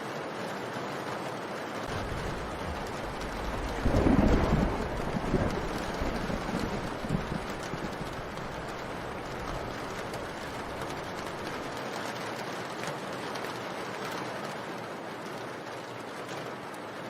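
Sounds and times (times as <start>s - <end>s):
steady rain hiss: 0.0s - 17.0s
raindrop ticks: 1.8s - 17.0s
low rumble: 1.9s - 11.5s.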